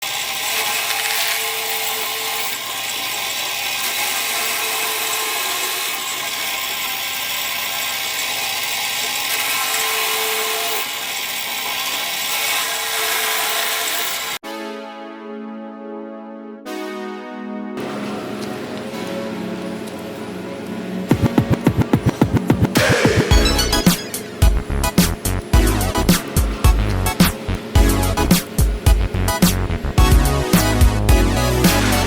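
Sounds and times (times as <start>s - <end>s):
power tools whining: 0.0s - 14.4s, 20.9s - 32.0s.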